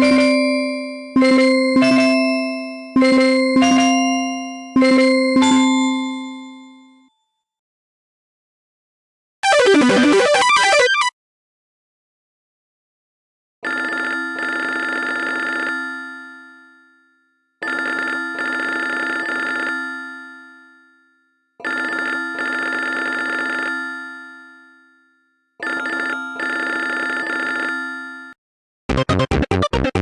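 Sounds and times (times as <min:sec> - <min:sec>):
mobile phone ringtone: 0:00.0 - 0:07.1, 0:13.6 - 0:28.4.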